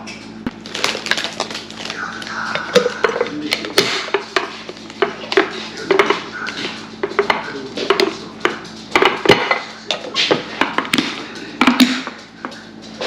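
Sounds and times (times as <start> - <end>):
kitchenware clinking and knocking: 2.6 - 12.2.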